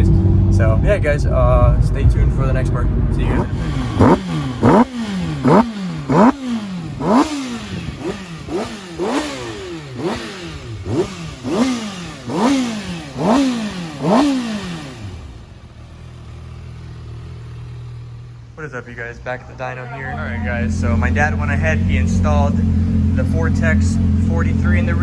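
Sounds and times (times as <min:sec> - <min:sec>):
motorcycle engine revving: 0:02.8 - 0:25.0
motorcycle engine idling: 0:03.1 - 0:25.0.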